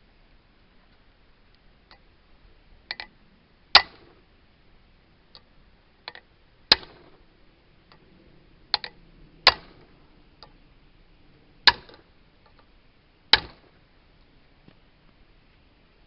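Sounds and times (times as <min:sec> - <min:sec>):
light metallic clicks: 0:02.9 - 0:03.1, 0:08.7 - 0:10.6.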